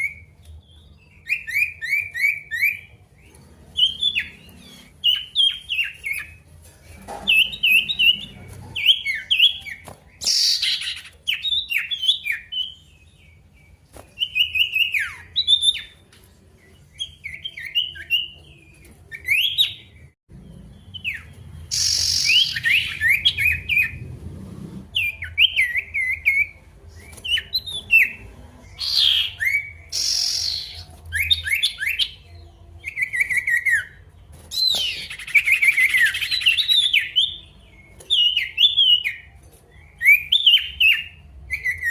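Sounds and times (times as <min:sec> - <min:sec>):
songbird chirping: 0:00.0 - 0:41.9.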